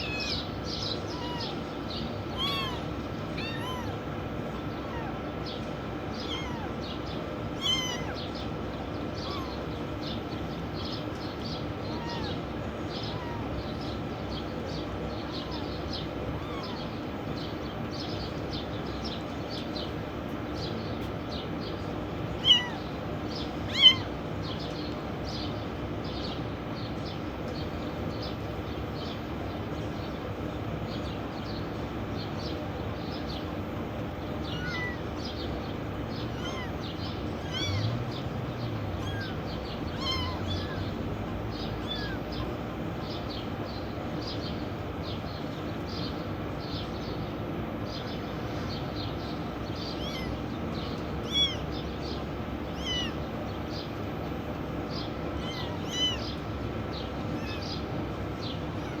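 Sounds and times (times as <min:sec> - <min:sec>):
kittens meowing: 0:00.0 - 0:17.6, 0:22.1 - 0:25.7, 0:33.9 - 0:43.2, 0:49.3 - 0:59.0
steady background noise: 0:00.0 - 0:59.0.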